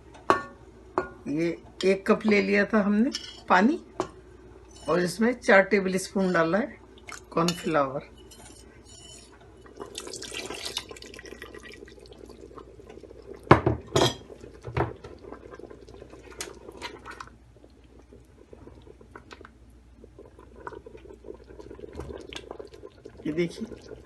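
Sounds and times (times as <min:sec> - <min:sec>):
liquid poured into soup: 0:09.2 - 0:24.0.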